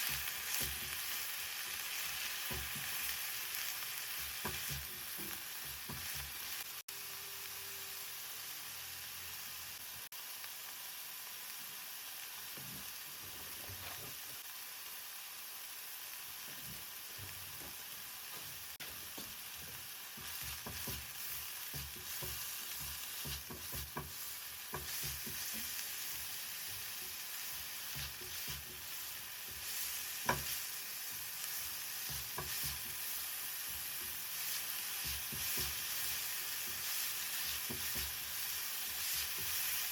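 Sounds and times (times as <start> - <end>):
vegetables sizzling in a pan: 0.0 - 39.9
spoon stirring and tapping a pan: 2.1 - 3.2, 4.2 - 6.3, 18.8 - 31.4, 32.0 - 39.9.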